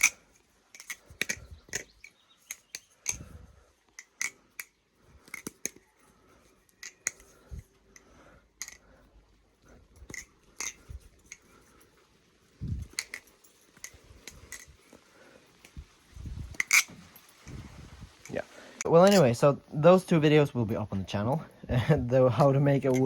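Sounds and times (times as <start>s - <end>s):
butterfly knife clacking: 16.5s - 17.0s.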